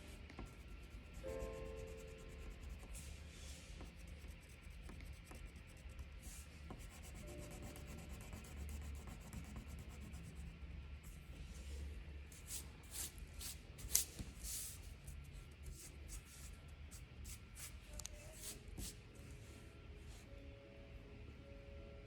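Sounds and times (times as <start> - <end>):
faint background music: 0.0 - 22.0
pencil scratching on paper: 0.4 - 3.2, 3.8 - 10.5.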